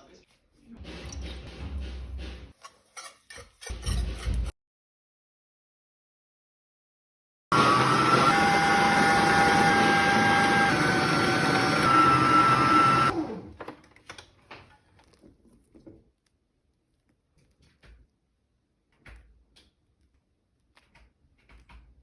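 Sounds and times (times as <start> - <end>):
kitchen appliance motor whining: 7.5 - 13.7.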